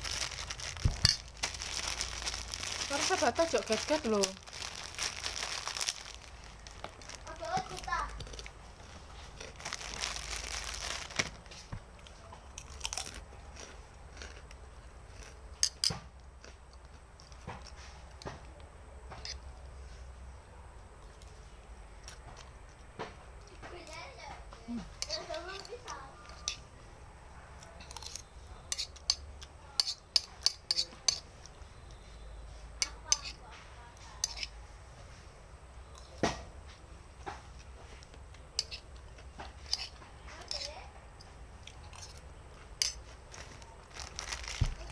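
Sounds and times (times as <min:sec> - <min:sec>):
person chewing noodles: 0:12.5 - 0:15.4
cutlery clinking against a bowl: 0:19.1 - 0:19.4, 0:25.0 - 0:26.7, 0:27.6 - 0:31.6, 0:32.8 - 0:33.4, 0:34.1 - 0:34.6, 0:38.6 - 0:43.7.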